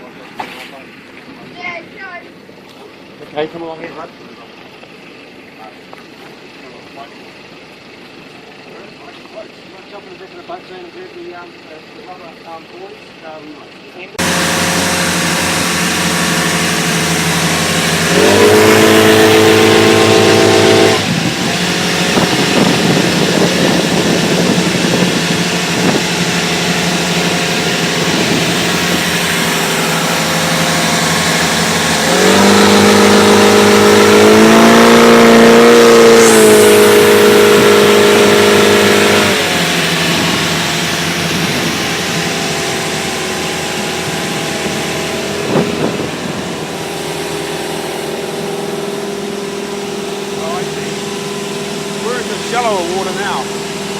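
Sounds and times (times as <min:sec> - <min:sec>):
boat engine revving: 0:14.2 - 0:53.9
rushing water and wind: 0:14.2 - 0:53.9.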